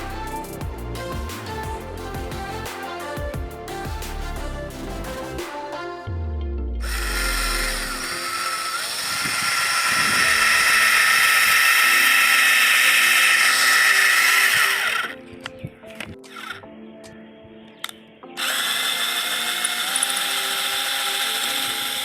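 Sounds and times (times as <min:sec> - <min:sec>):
cordless drill whine: 0:06.8 - 0:15.2, 0:18.4 - 0:22.0.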